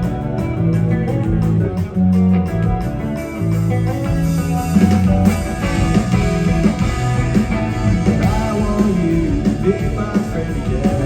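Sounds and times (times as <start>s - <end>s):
bass notes: 0.0s - 11.0s
electric guitar: 0.0s - 11.0s
drum beat: 3.9s - 11.0s.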